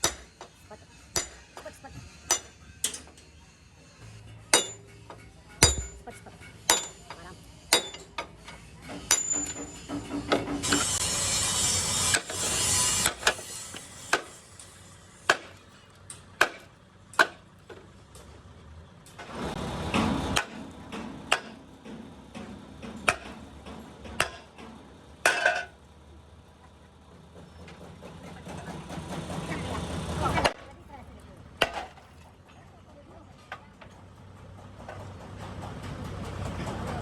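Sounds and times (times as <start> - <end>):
hammer strikes: 0.0 - 3.3, 4.5 - 11.0, 15.2 - 15.6, 16.4 - 17.8, 19.9 - 24.6.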